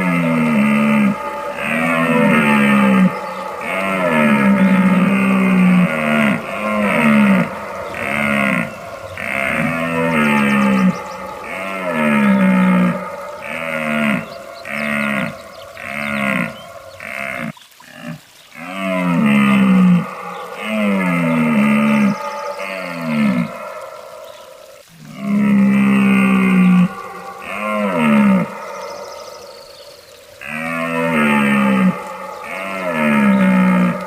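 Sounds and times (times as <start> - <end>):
deer calling: 0.0 - 17.6.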